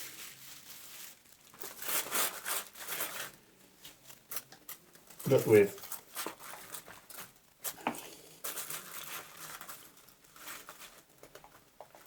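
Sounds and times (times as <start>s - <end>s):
canvas and plastic rustling: 0.0s - 12.0s.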